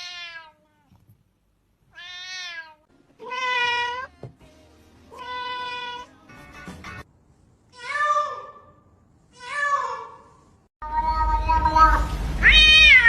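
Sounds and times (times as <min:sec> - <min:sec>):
cat meowing: 0:00.0 - 0:00.9, 0:01.9 - 0:04.1, 0:10.8 - 0:13.0.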